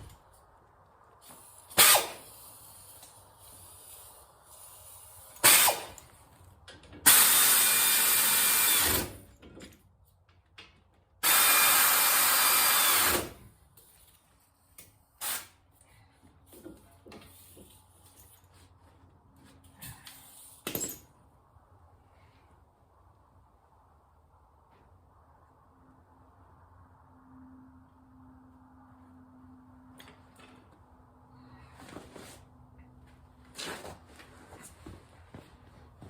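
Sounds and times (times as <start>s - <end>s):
power tool running: 11.2s - 13.4s.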